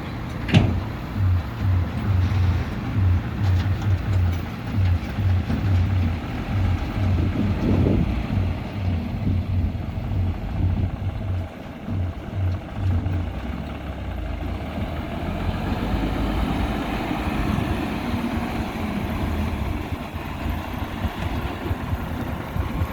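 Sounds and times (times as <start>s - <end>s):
diesel engine rumbling: 0.0s - 22.9s.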